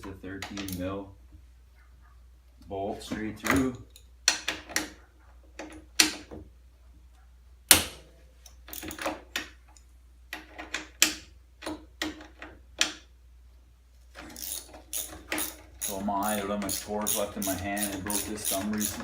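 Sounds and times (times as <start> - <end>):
hand ratchet clicking: 14.3 - 19.0.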